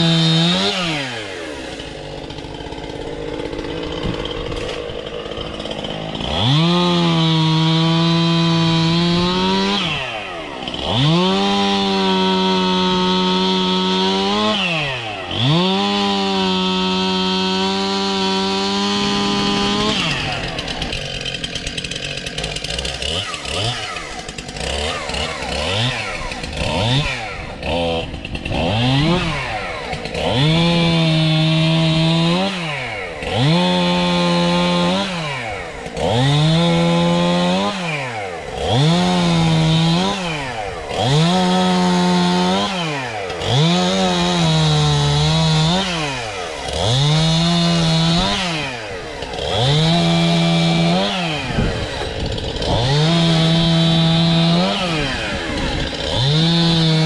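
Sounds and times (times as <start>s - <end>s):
chainsaw revving: 0.0s - 57.0s.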